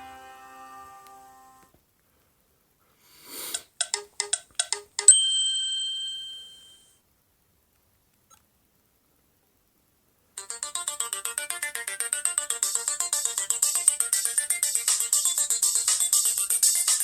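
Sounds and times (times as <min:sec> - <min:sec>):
bell-like note ringing: 0:05.1 - 0:06.9.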